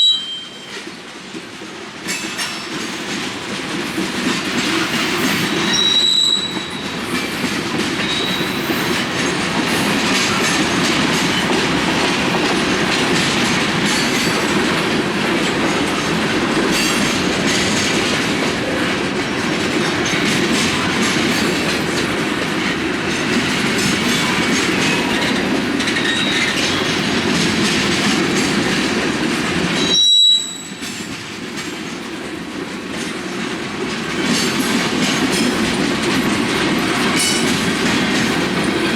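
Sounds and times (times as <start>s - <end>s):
freight train cars rolling: 0.0s - 38.9s
high-pitched wheel squeals: 5.7s - 6.8s, 29.8s - 30.8s.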